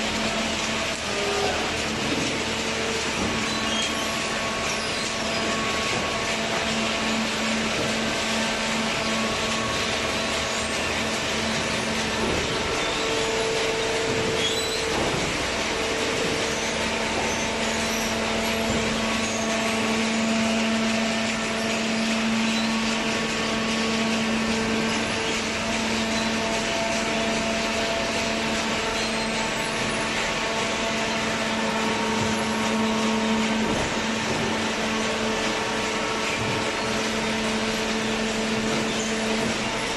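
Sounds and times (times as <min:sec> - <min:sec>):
hydraulic power unit humming: 0:00.0 - 0:39.9.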